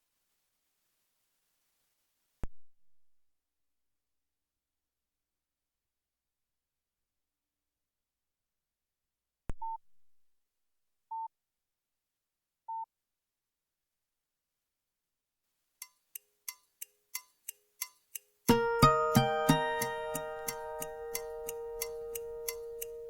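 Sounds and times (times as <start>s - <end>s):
plucked ringtone melody: 18.5s - 23.0s.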